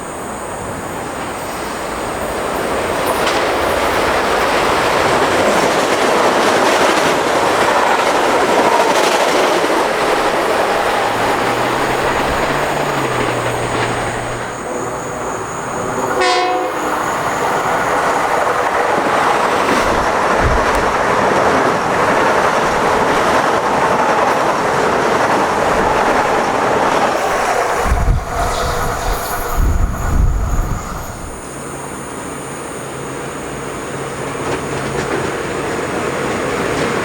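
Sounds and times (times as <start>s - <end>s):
train wheels rushing on rails: 0.0s - 37.0s
faint whine: 7.1s - 21.3s, 27.2s - 36.7s.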